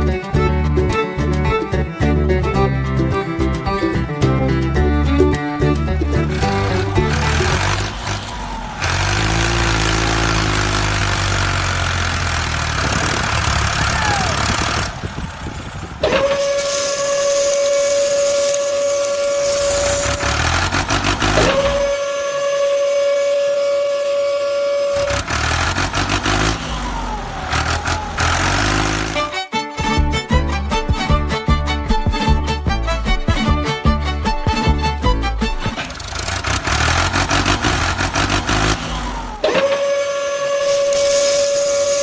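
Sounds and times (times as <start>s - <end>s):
vehicle engine running: 2.1s - 23.0s, 24.3s - 42.0s
long horn-like tones: 16.0s - 29.4s, 39.4s - 42.0s.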